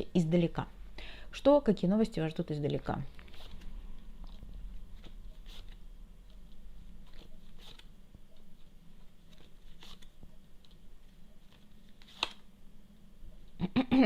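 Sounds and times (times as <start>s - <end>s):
cards rustling and clicking: 3.1s - 12.5s.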